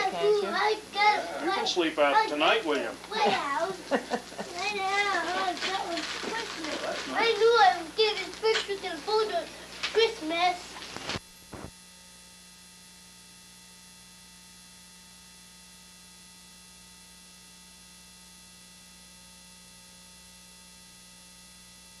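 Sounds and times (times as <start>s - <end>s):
electrical hum: 0.0s - 22.0s.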